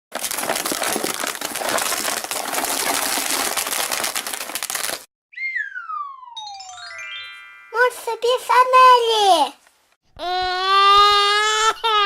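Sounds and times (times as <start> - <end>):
wrapper crinkling: 0.1 - 5.1
whistle-like tone sliding down: 5.3 - 7.1.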